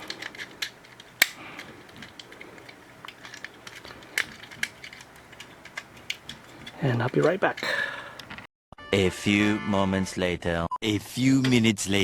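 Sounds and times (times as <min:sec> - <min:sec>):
sharp plastic snap: 0:00.0 - 0:02.5
plastic toy parts clicking: 0:00.0 - 0:08.4.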